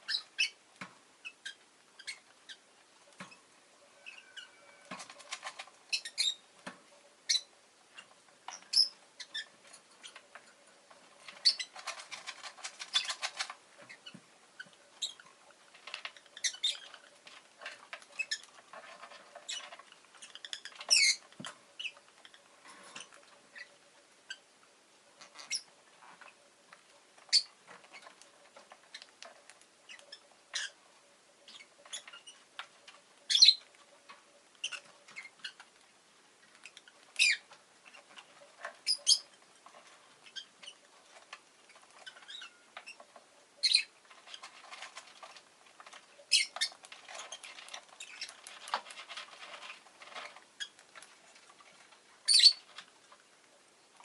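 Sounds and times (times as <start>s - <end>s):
lovebird chirping: 0.0s - 0.6s, 3.9s - 4.9s, 5.9s - 6.4s, 7.3s - 10.2s, 13.9s - 15.3s, 20.2s - 22.4s, 27.3s - 27.5s, 33.3s - 33.6s, 37.2s - 37.5s, 38.8s - 39.4s, 42.0s - 43.0s, 43.6s - 44.0s, 46.3s - 47.4s, 52.2s - 52.7s
bird chatter: 33.3s - 33.6s, 43.6s - 45.4s, 46.3s - 48.9s, 52.3s - 52.8s.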